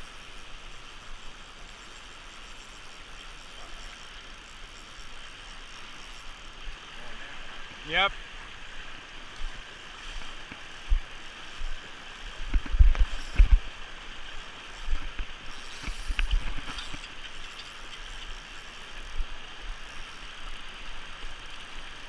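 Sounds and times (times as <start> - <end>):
river water rushing: 3.0 - 22.0
faint clicks: 14.8 - 18.5.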